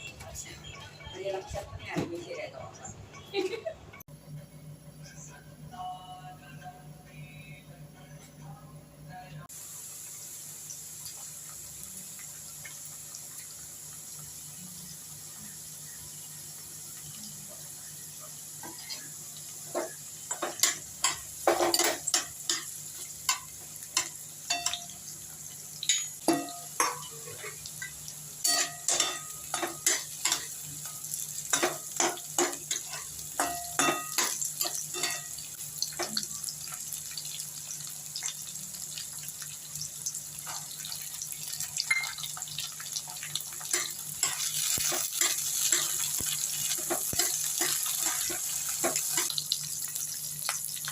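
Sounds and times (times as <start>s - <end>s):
frying sizzle: 9.4s - 50.9s
spoon clinking against a pan: 20.3s - 22.7s, 23.3s - 25.0s, 25.8s - 36.1s, 41.8s - 42.4s, 43.6s - 49.3s.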